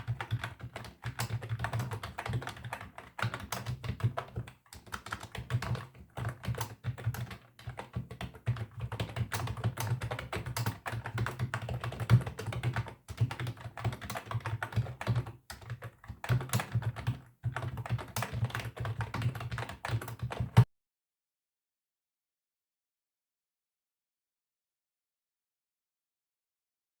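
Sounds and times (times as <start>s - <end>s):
typing on keyboard: 0.0s - 20.7s.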